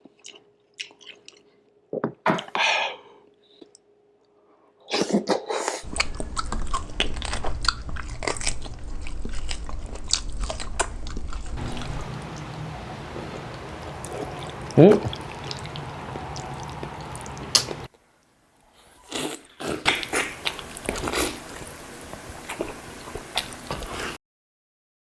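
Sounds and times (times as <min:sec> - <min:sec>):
chewing and biting food: 0:00.0 - 0:01.5, 0:05.9 - 0:17.9, 0:19.0 - 0:24.2
steady low hum: 0:05.9 - 0:17.9, 0:19.9 - 0:24.2.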